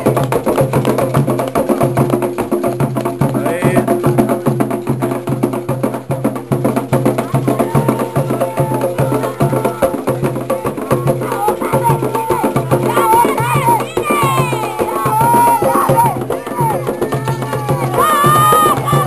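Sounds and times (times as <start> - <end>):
drums: 0.0 - 19.0
fast clicking percussion: 0.0 - 19.0
voices singing: 7.2 - 19.0.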